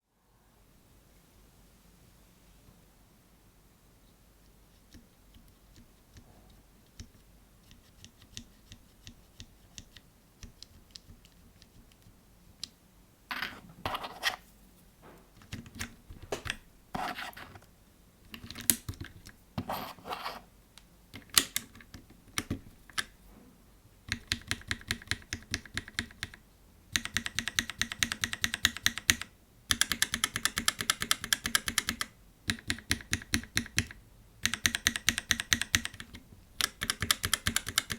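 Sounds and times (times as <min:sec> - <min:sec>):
mechanical keyboard typing: 0:15.4 - 0:17.3, 0:24.1 - 0:37.9.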